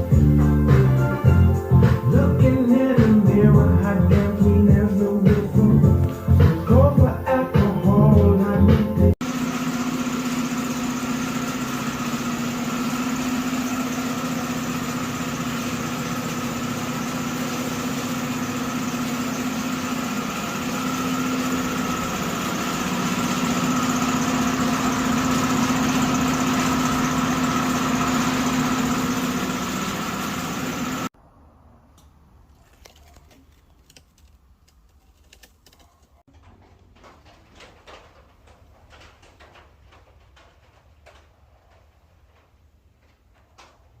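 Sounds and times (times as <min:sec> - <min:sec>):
machine droning hum: 0:00.1 - 0:31.1.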